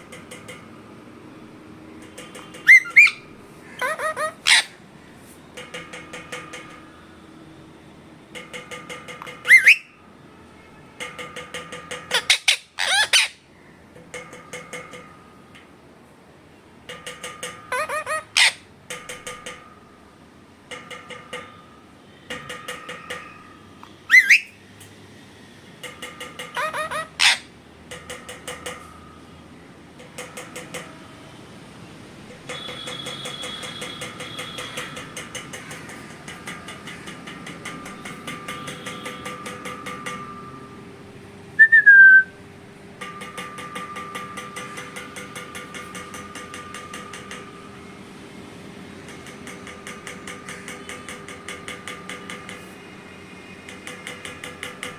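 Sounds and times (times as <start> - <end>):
parrot trilling chatter: 2.6 - 4.8, 9.2 - 10.0, 12.1 - 13.4, 17.4 - 18.6, 24.1 - 24.5, 26.4 - 27.5
parrot whistles: 2.7 - 3.2, 9.4 - 10.0, 24.1 - 24.6, 26.6 - 27.4, 41.6 - 42.3.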